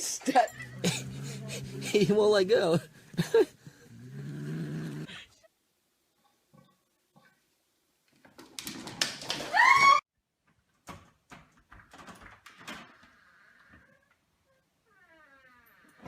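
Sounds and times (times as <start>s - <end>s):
high animal cry: 0.5s - 2.1s.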